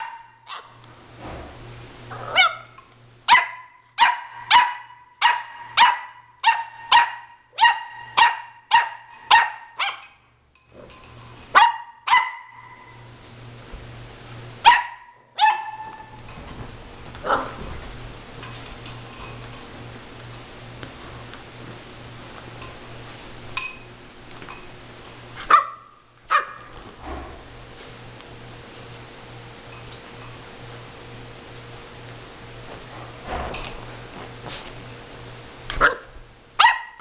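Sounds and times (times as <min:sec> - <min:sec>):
dog barking: 0:00.0 - 0:00.7, 0:03.3 - 0:10.1, 0:11.6 - 0:12.9, 0:14.6 - 0:16.0, 0:25.5 - 0:26.6, 0:35.8 - 0:37.0.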